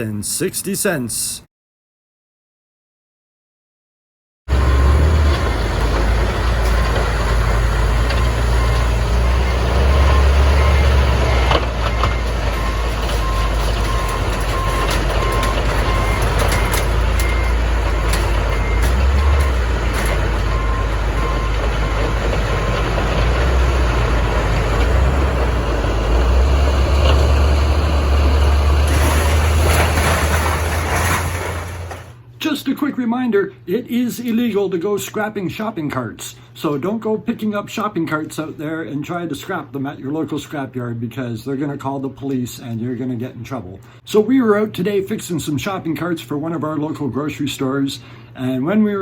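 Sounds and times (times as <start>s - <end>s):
heavy vehicle engine rumbling: 4.5s - 32.2s
reversing alarm beeping: 7.5s - 29.3s.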